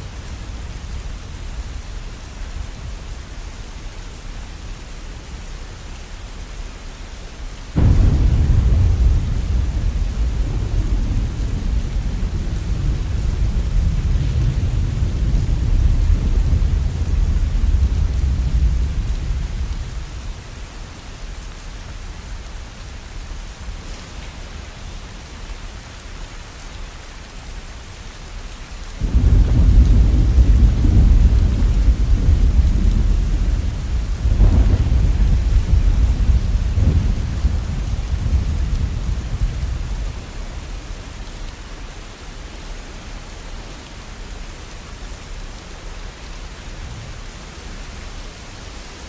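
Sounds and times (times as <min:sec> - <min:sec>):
rain falling steadily: 0:00.0 - 0:49.0
deep rumble of thunder: 0:07.8 - 0:20.6, 0:29.0 - 0:41.3.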